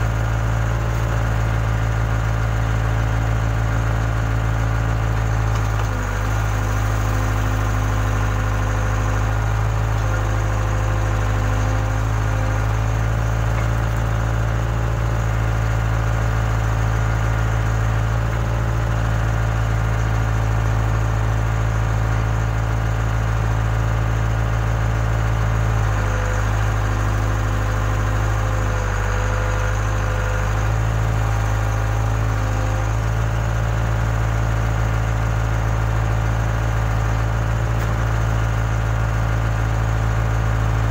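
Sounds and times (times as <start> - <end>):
diesel engine running: 0.0 - 40.9.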